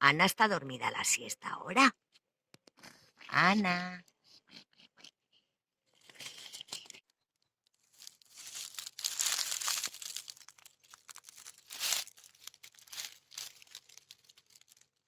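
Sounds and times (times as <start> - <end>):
material crinkling and rustling: 7.7 - 15.0.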